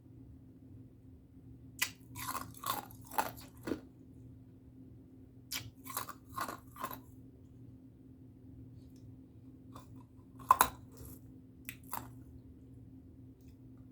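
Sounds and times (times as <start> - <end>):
ice crunching while chewed: 1.8 - 3.9, 5.5 - 7.2, 9.7 - 12.3.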